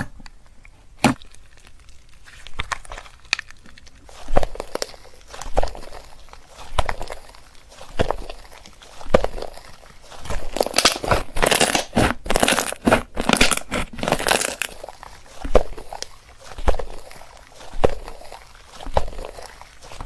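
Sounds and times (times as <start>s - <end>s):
slime popping and crackling: 0.0s - 20.0s.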